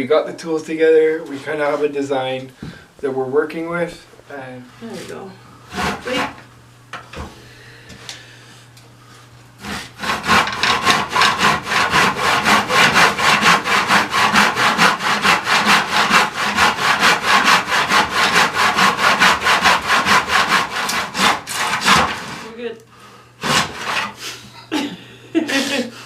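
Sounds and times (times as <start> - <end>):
hand saw cutting wood: 5.7 - 6.4, 9.6 - 22.7, 23.4 - 24.4.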